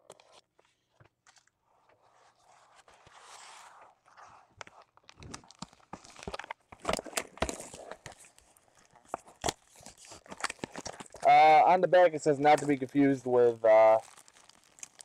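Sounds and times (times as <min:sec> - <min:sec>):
packaging crinkling and rustling: 0:02.8 - 0:11.3, 0:12.0 - 0:15.0.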